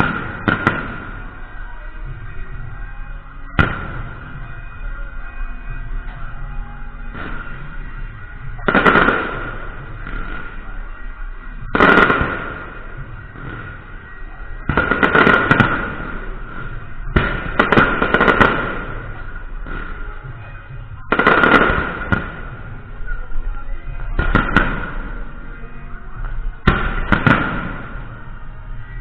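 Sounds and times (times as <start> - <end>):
electronic firecracker crackling pops: 0.0 - 1.3, 3.6 - 4.6, 7.1 - 7.9, 8.6 - 10.6, 11.6 - 13.8, 14.6 - 20.5, 21.1 - 22.8, 24.2 - 25.2, 26.2 - 28.8
constant high hum: 0.0 - 29.0.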